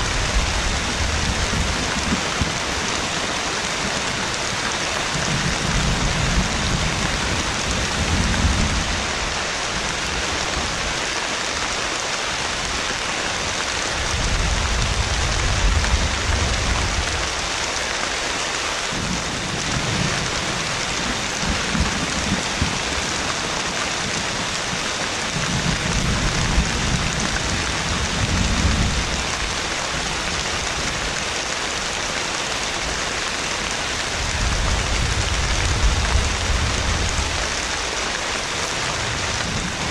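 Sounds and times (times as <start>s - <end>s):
thunder rumbling: 0.0s - 9.4s, 18.8s - 31.3s, 33.2s - 39.9s
heavy rain: 0.0s - 39.9s.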